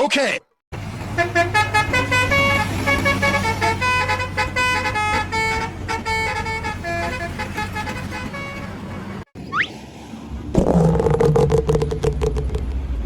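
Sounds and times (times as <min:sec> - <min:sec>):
musical horn playing a tune: 0:01.1 - 0:09.2.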